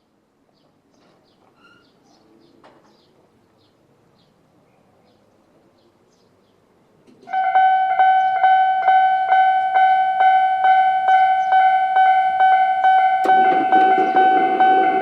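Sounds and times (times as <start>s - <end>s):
level crossing alarm ringing: 7.3s - 15.0s.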